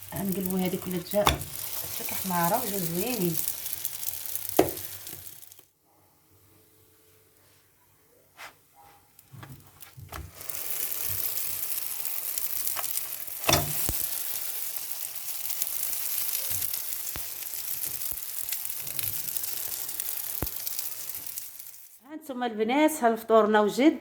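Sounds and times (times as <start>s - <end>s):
food sizzling in a frying pan: 0.0s - 5.6s, 9.3s - 22.0s.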